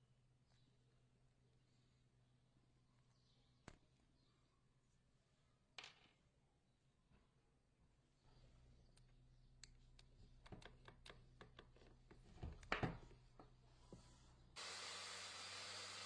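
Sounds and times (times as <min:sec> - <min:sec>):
steady hiss: 0:14.6 - 0:16.0.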